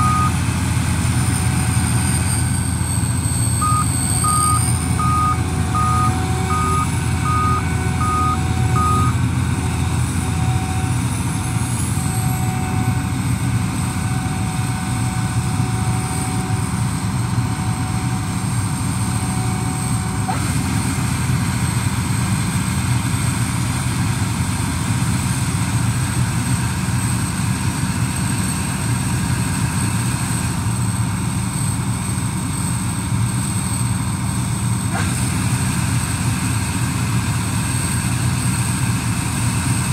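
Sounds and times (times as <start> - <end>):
electronic warning beep: 0.0 - 0.4, 2.1 - 13.0
combine harvester engine humming: 0.0 - 39.9.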